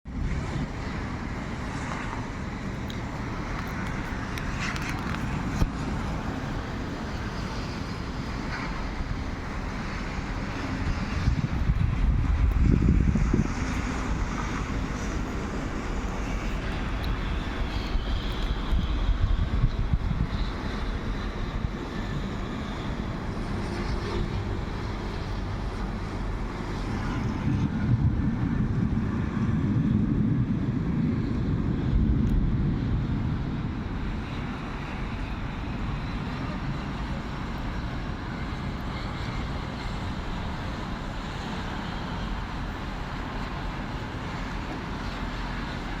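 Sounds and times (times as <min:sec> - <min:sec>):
sea and rain rushing: 0:00.1 - 0:29.4.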